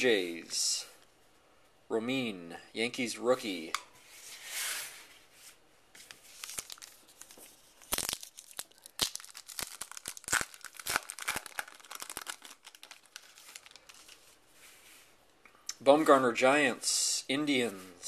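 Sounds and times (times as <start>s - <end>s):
wrapper tearing and crinkling: 6.0s - 14.2s.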